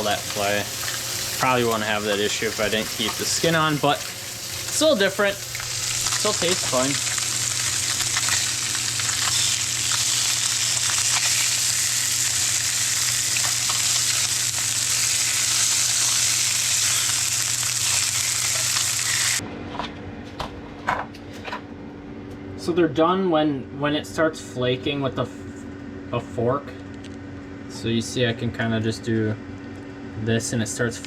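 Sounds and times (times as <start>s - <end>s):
fish sizzling in hot oil: 0.0s - 19.4s.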